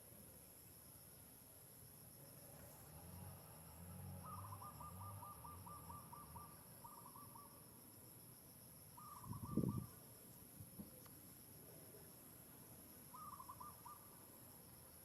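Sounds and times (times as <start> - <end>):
distant bird hooting: 4.1 - 7.6, 9.0 - 10.0, 13.1 - 14.2.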